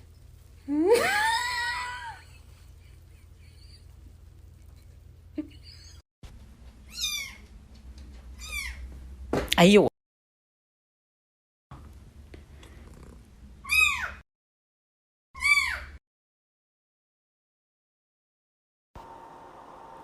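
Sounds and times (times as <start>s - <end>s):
cat meowing: 6.9s - 7.4s.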